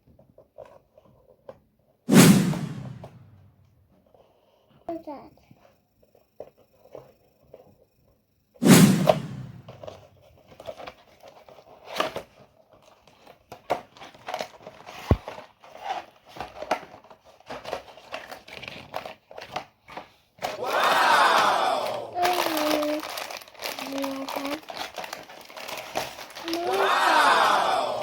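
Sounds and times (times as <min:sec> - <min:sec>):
plastic packaging crinkling: 0:22.2 - 0:26.7.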